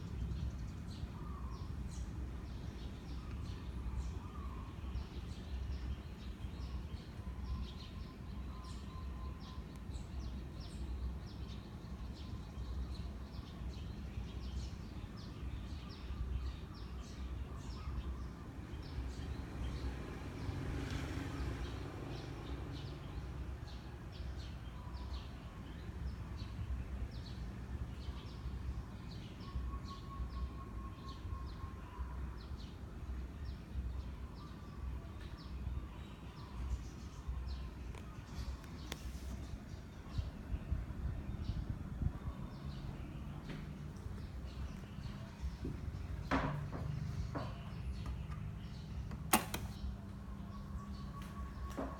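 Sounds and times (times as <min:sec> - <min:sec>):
small birds chirping: 0:00.0 - 0:51.9.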